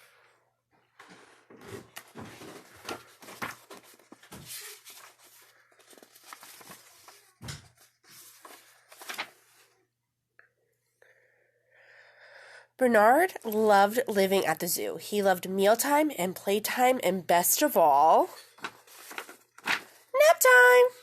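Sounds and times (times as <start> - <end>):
paper pages rustling and turning: 0.9 - 9.8, 18.4 - 20.7.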